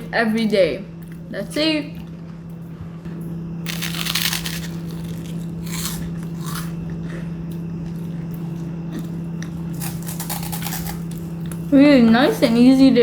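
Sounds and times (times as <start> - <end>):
low hum: 0.0 - 13.0
person chewing crunchy food: 3.6 - 11.7.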